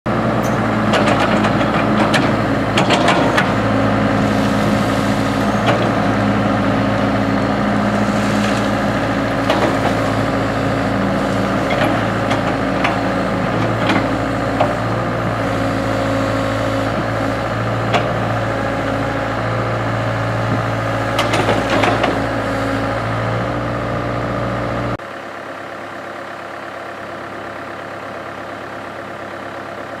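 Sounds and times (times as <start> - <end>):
excavator diesel engine running: 0.1 - 30.0
knocks and clanks: 0.8 - 3.6, 21.2 - 22.2.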